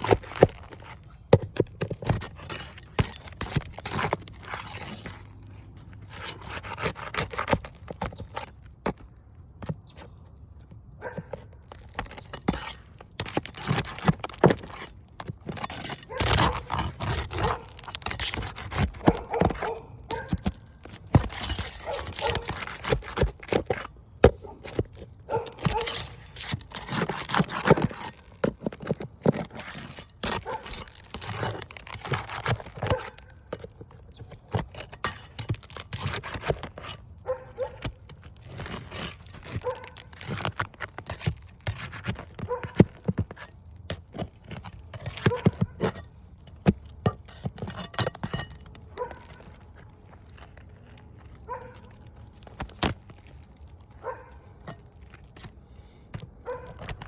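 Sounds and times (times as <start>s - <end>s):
clicks scrapes and knocks: 0.0s - 57.0s
dog barking and whining: 17.3s - 17.8s, 19.1s - 20.4s, 21.8s - 22.5s, 25.3s - 26.0s, 30.4s - 30.7s, 37.2s - 37.8s, 39.6s - 40.0s, 42.4s - 42.8s, 49.0s - 49.5s, 56.4s - 56.8s.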